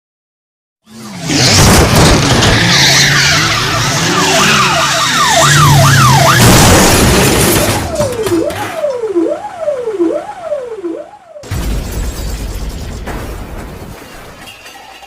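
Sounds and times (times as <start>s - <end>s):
vehicle noise: 0.8s - 11.5s
tyres skidding: 0.9s - 10.8s
siren wailing: 0.9s - 11.5s.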